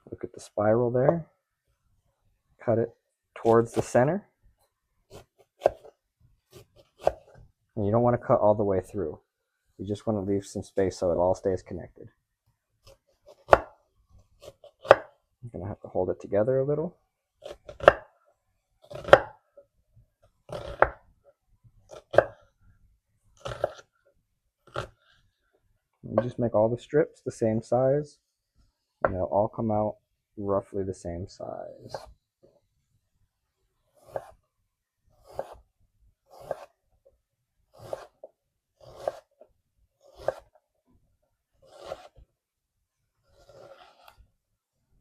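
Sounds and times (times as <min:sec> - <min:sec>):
knife slicing onion on board: 0:05.1 - 0:05.9, 0:06.6 - 0:07.4, 0:12.9 - 0:13.8, 0:14.4 - 0:15.1, 0:17.4 - 0:18.1, 0:18.9 - 0:19.4, 0:20.5 - 0:21.0, 0:21.9 - 0:22.4, 0:23.4 - 0:23.9, 0:31.8 - 0:32.2, 0:34.0 - 0:34.4, 0:35.2 - 0:35.6, 0:36.3 - 0:36.8, 0:37.7 - 0:39.4, 0:40.0 - 0:40.6, 0:41.6 - 0:42.2.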